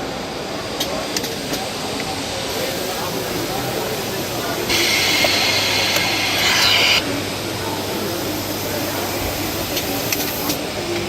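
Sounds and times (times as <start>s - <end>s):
loud hiss of air: 4.2s - 7.2s.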